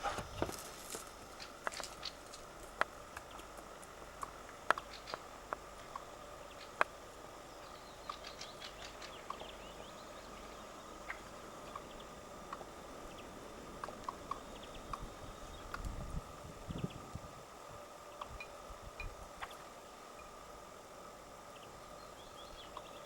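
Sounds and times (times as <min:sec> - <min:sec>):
squirrel clicking calls: 0:01.3 - 0:09.6, 0:11.0 - 0:16.0, 0:22.6 - 0:23.0.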